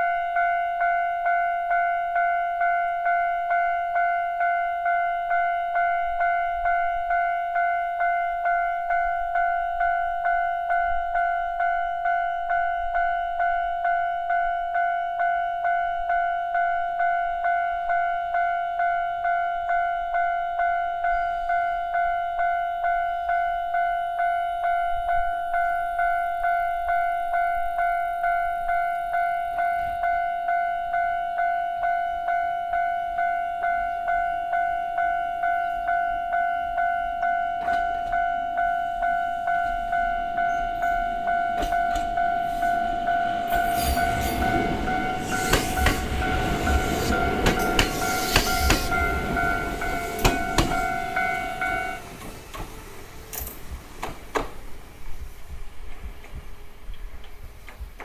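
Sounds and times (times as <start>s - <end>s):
level-crossing warning bell: 0.0s - 56.8s
train approaching: 0.0s - 58.0s
wheels clicking over rail joints: 39.4s - 58.0s.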